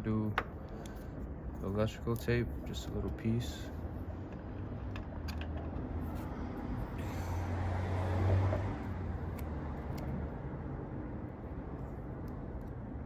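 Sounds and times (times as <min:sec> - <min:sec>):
steady low hum: 0:00.0 - 0:13.0
vehicle passing: 0:05.8 - 0:11.8.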